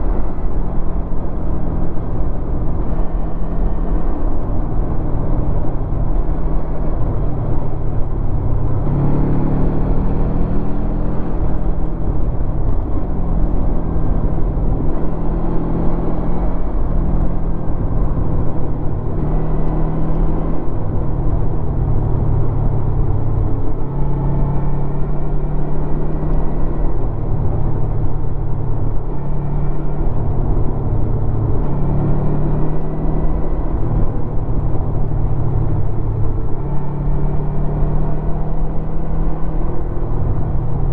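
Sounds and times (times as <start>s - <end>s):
motorcycle engine revving: 8.3s - 11.8s.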